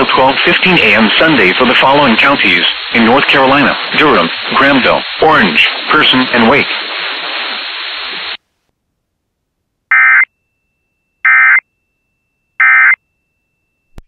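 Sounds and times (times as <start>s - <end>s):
stream hiss: 0.0s - 8.4s.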